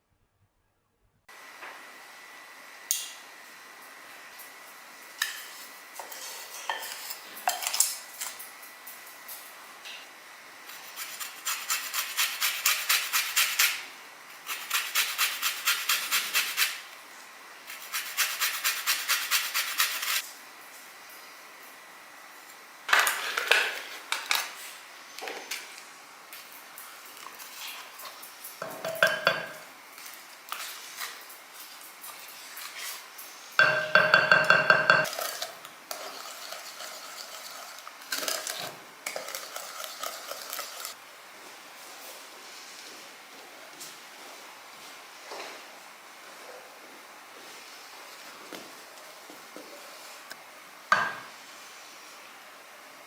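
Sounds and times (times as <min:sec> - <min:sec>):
utensil beating inside a bowl: 0:33.6 - 0:35.3.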